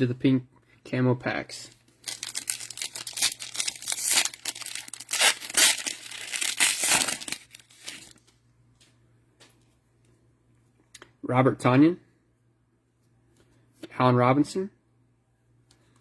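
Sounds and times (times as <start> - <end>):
plastic wrapper tearing and crinkling: 1.9 - 8.3.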